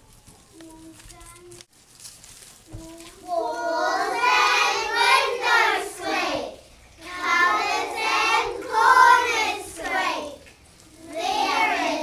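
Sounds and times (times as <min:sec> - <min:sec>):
child singing: 0:02.7 - 0:12.0.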